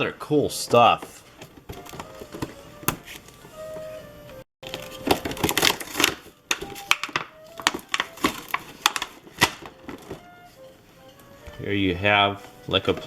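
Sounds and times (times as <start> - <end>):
faint music: 0.0 - 13.0
plastic and paper toy pieces clicking: 4.6 - 9.7.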